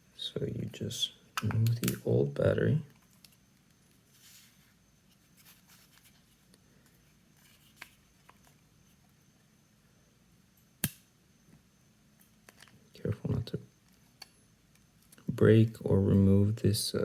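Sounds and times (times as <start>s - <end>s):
plastic clicks: 1.4s - 2.1s
plastic parts scraping and rustling: 2.9s - 8.6s.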